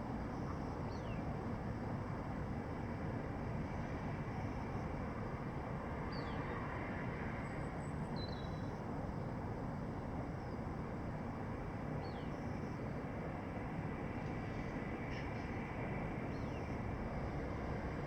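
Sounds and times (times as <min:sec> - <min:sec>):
city background noise: 0:00.0 - 0:18.0.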